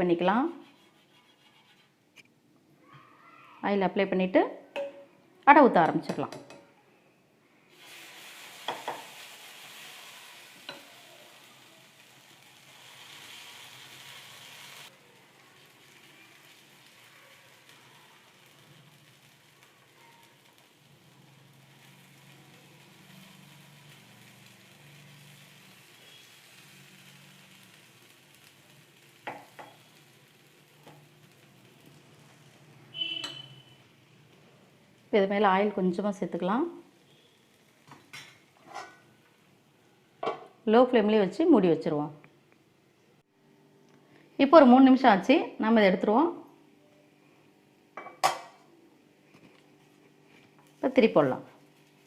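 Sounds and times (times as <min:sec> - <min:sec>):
batter sizzling on a griddle: 0:07.7 - 0:39.9, 0:49.2 - 0:52.0.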